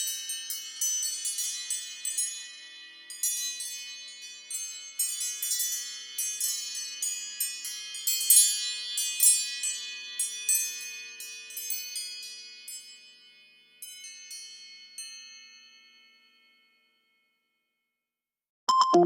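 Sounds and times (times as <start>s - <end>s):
chime-like ringtone tones: 18.7s - 19.0s
synthesizer ringtone melody: 18.7s - 19.0s.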